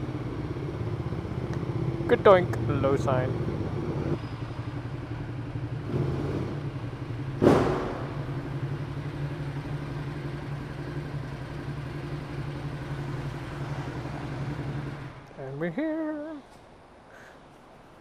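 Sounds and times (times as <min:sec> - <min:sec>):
motorcycle engine running: 0:00.0 - 0:15.2
loud thump: 0:07.4 - 0:08.3.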